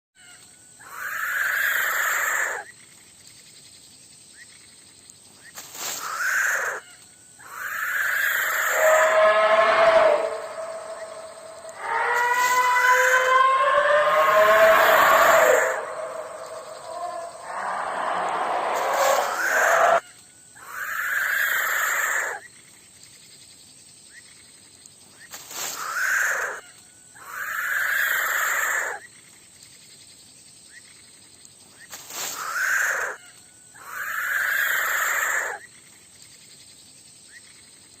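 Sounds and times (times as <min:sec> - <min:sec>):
breathy animal hissing: 0:07.5 - 0:20.0.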